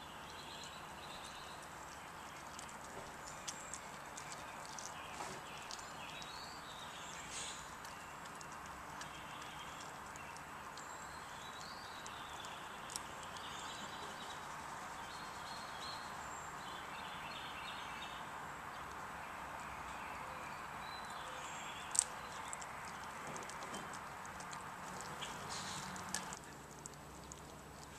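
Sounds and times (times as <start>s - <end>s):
dog chewing clicks: 1.2s - 14.3s, 21.9s - 27.9s.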